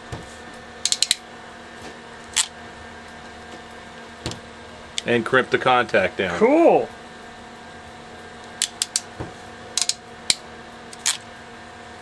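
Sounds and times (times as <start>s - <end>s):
crimping tool clicks and snaps: 0.8s - 1.2s, 8.6s - 9.1s, 9.8s - 11.2s.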